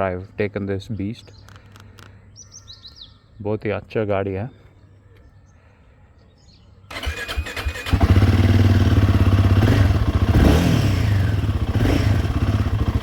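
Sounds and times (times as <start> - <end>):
engine starter cranking: 6.9 - 8.3
motorcycle engine idling: 6.9 - 13.0.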